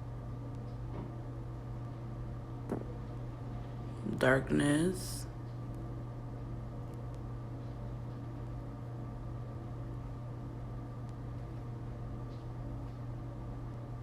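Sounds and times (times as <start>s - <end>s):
room hum with light hiss: 0.0s - 14.0s.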